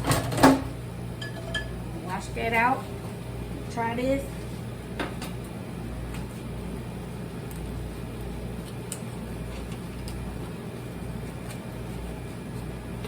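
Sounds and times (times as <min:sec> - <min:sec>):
air fryer humming: 0:00.0 - 0:13.0.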